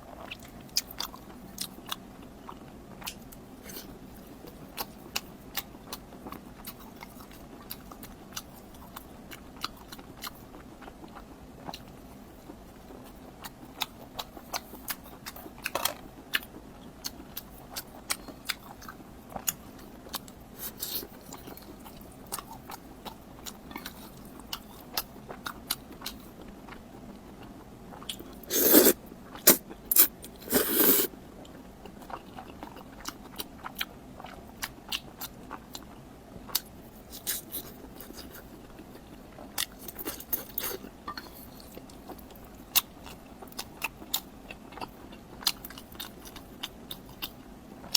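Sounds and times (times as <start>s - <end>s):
chewing and crunching food: 0.0s - 47.9s.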